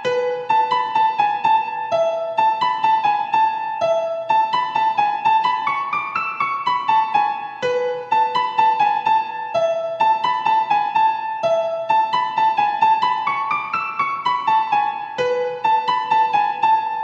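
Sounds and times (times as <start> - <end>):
piano-like keyboard notes: 0.0 - 17.0.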